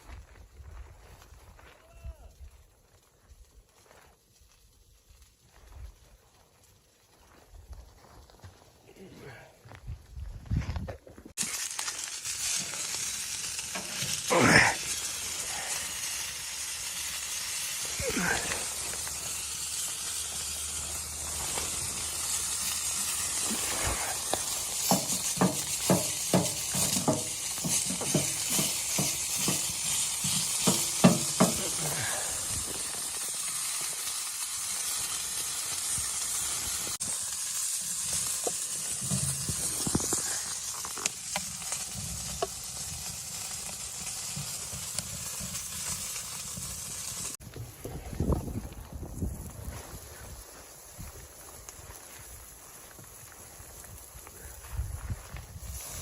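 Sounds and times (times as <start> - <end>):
food sizzling in a pan: 11.4 - 47.4, 48.2 - 56.0
utensil tapping a pan: 24.8 - 29.7, 30.3 - 31.7.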